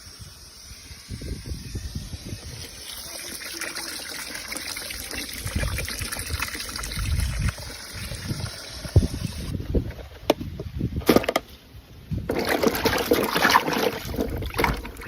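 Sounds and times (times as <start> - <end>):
water trickling and splashing: 2.4 - 9.6, 12.3 - 15.0.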